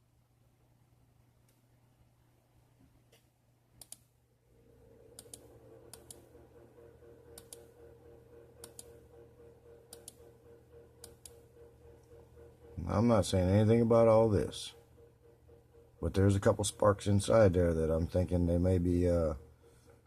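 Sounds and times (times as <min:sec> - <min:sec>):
low steady hum: 0:00.0 - 0:20.0
computer mouse clicks: 0:03.1 - 0:04.1, 0:05.2 - 0:06.2, 0:07.4 - 0:07.7, 0:08.6 - 0:08.9, 0:09.9 - 0:10.2, 0:11.0 - 0:11.4.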